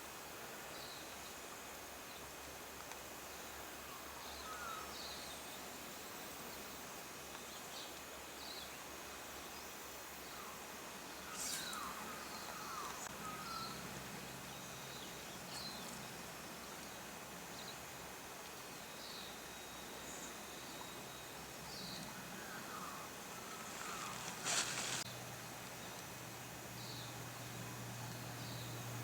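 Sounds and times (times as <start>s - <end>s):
small birds chirping: 10.4s - 17.9s, 20.0s - 25.2s.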